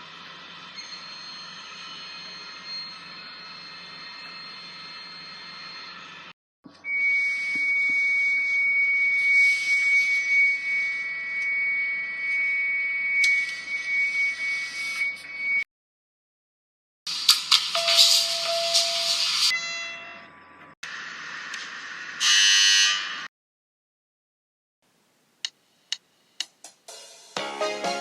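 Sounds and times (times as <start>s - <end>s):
steady high electronic tone: 0.7s - 15.6s.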